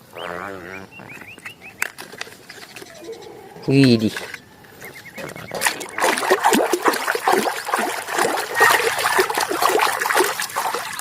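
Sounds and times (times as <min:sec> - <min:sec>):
water splashing and trickling: 0:01.8 - 0:11.0.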